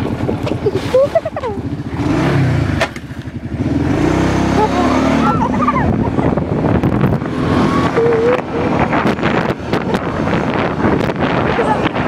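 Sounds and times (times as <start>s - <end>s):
atv engine running hard: 0.0s - 12.0s
wind buffeting microphone: 0.0s - 12.0s.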